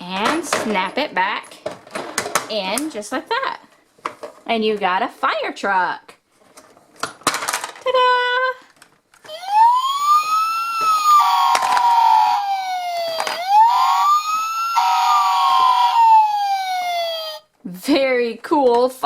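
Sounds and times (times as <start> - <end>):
toy siren wailing: 9.3 - 17.5
electronic tones: 9.4 - 12.5, 14.8 - 16.0.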